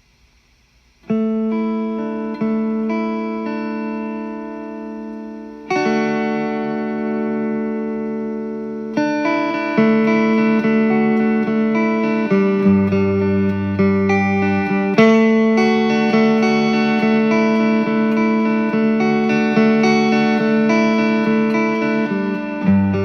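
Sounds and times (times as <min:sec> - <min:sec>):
overdriven electric guitar chords: 0:00.8 - 0:23.0.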